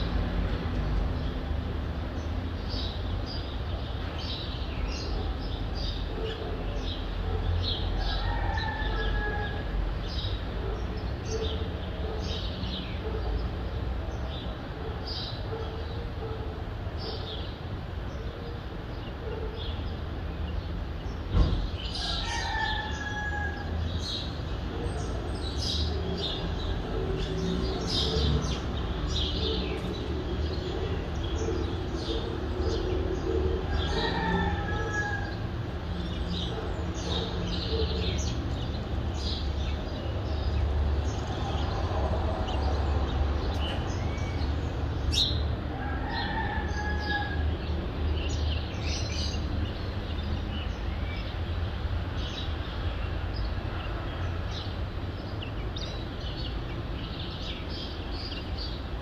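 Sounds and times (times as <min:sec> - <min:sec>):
low rumble of city traffic: 0:00.0 - 0:59.0
small birds chirping: 0:02.0 - 0:33.4
thump: 0:21.3 - 0:21.7.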